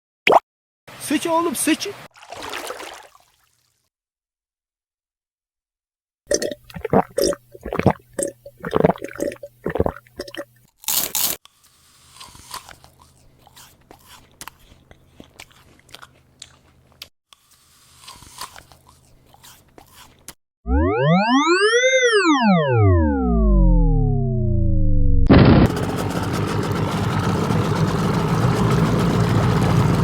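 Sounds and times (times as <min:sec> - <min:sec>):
loud crunching and chewing: 0:06.3 - 0:20.4.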